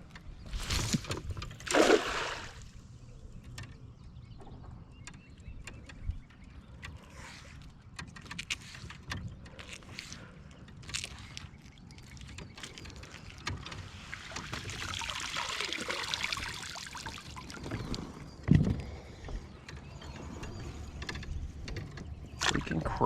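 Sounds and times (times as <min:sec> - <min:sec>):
water splashing and dripping: 0:01.6 - 0:02.7, 0:10.9 - 0:18.2, 0:22.4 - 0:23.0.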